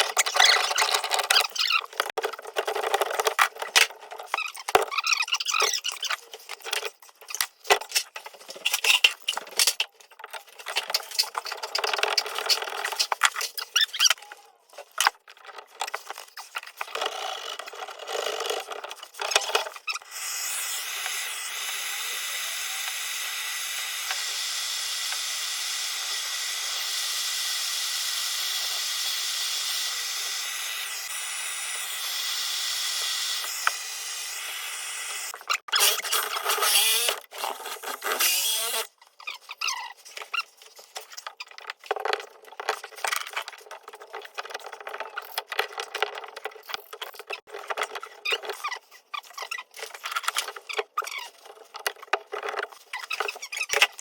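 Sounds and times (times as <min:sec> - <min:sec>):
tool hissing: 0:20.0 - 0:37.2, 0:38.2 - 0:38.9.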